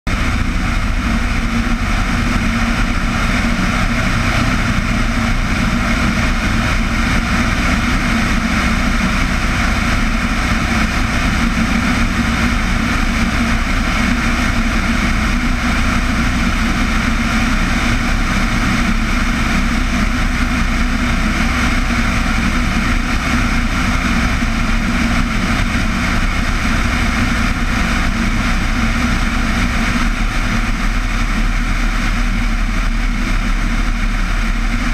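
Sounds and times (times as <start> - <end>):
steady engine drone: 0.0 - 34.9.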